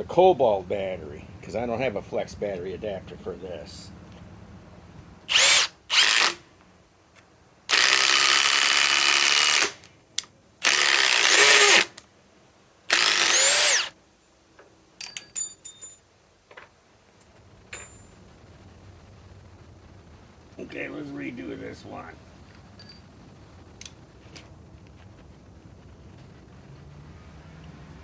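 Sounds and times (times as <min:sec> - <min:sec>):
impact driver running: 0:10.6 - 0:11.9, 0:12.9 - 0:13.9.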